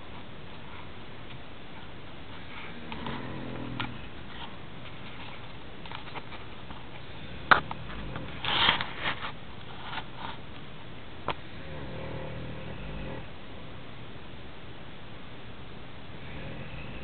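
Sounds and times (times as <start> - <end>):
man snoring: 16.2 - 17.0.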